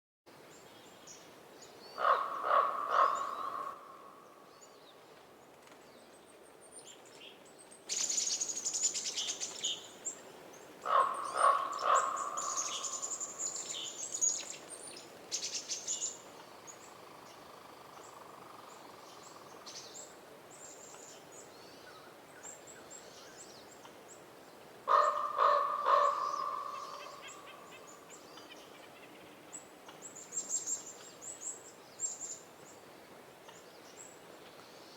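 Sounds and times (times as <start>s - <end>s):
small birds chirping: 0.5s - 34.9s
raven croaking: 2.0s - 4.2s, 10.8s - 13.2s, 24.9s - 28.0s.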